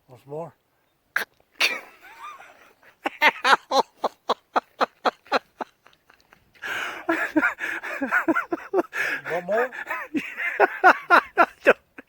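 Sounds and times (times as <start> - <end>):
voices: 6.6 - 11.8.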